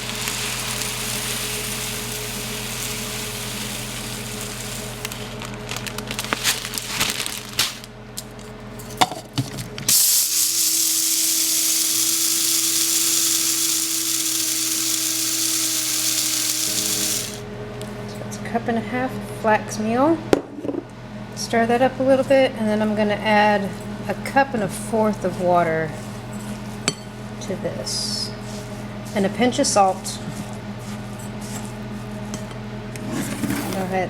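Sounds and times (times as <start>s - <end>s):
electric coffee grinder grinding: 0.0s - 7.6s, 9.9s - 17.5s, 33.1s - 34.0s.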